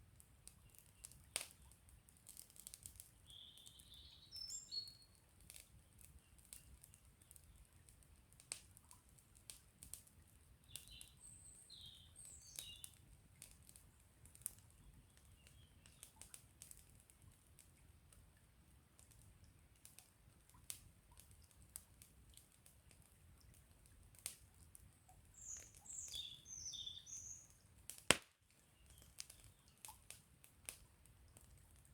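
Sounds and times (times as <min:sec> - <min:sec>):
campfire crackling: 0:00.1 - 0:04.7, 0:05.4 - 0:31.9
high bird chirps: 0:25.4 - 0:27.5.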